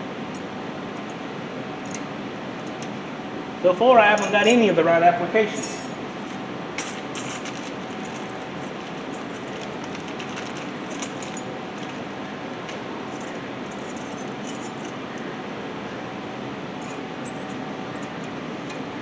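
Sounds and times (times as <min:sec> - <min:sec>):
steady background hiss: 0:00.0 - 0:19.0
small metal clips clinking: 0:06.8 - 0:12.1.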